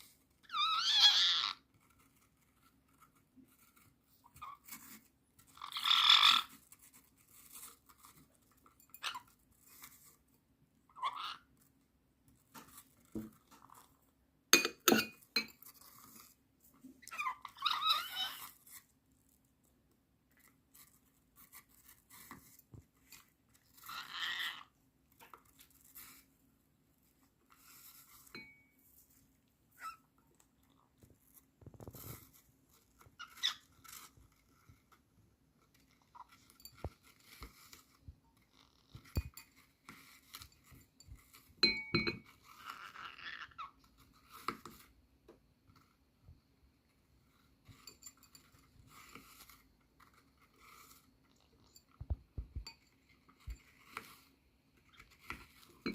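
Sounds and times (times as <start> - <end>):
parrot nibbling and chewing: 0.0 - 55.9
parrot chirps: 0.4 - 1.6.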